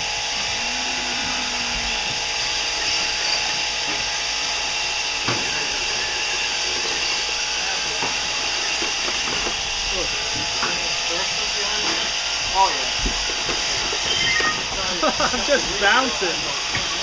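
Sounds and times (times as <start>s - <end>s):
electric motor and drivetrain whirring: 0.0s - 17.0s.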